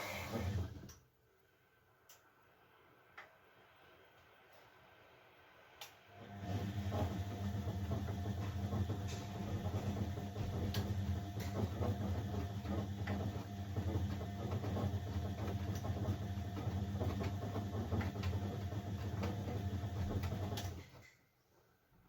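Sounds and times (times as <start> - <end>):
washing machine motor hum: 0.0 - 1.0, 5.4 - 21.2.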